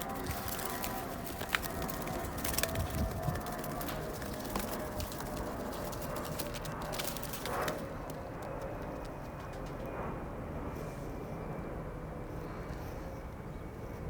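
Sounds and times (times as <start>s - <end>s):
pigeon clicks and taps: 0.0s - 9.9s.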